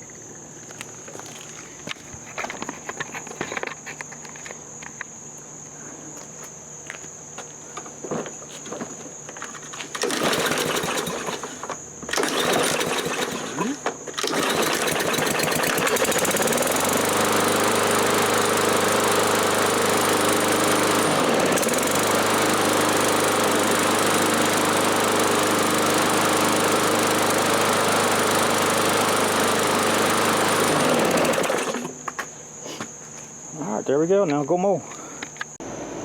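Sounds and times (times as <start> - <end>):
lawn mower engine running: 9.4 - 32.2.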